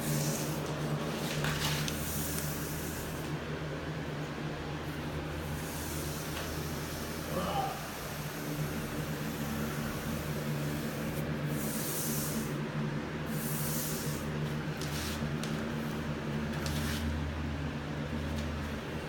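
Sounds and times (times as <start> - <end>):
steady low hum: 0.0 - 19.0
paintbrush strokes swishing on wood: 13.3 - 15.3.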